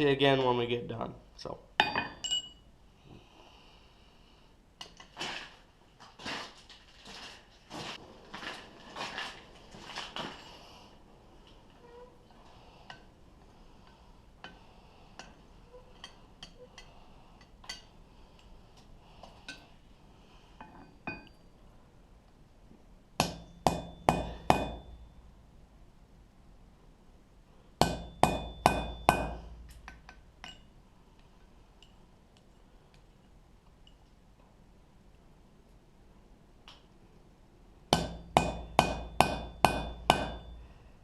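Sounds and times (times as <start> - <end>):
hammer ringing strikes on metal: 23.2 - 25.2, 27.8 - 29.6, 38.0 - 40.7.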